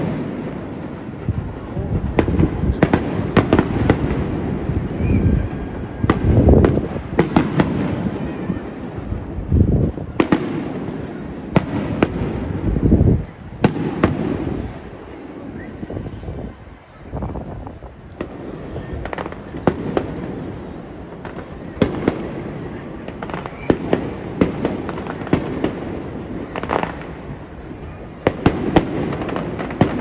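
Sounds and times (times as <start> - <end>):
fireworks cracks and crackle: 0.0 - 30.0
fireworks deep rolling booms: 0.0 - 30.0.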